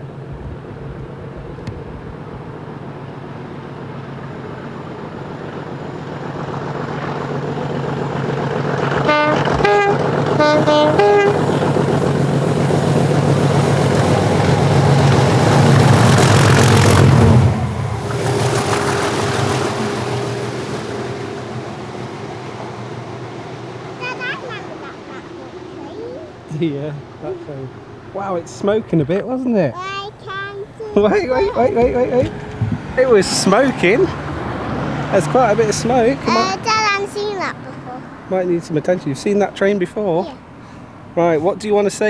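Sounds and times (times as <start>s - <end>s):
diesel locomotive passing: 0.0s - 42.0s
locomotive horn blasts: 8.9s - 14.9s.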